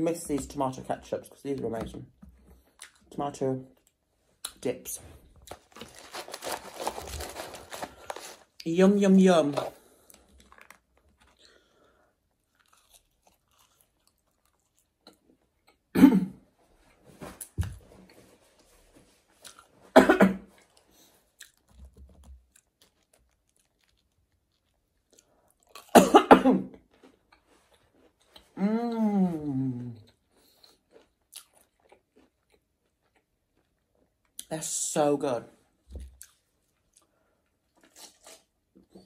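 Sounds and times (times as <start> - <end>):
person chewing: 2.5 - 3.2, 9.6 - 15.9, 19.4 - 19.8, 20.6 - 26.0, 29.7 - 34.5, 36.0 - 39.0.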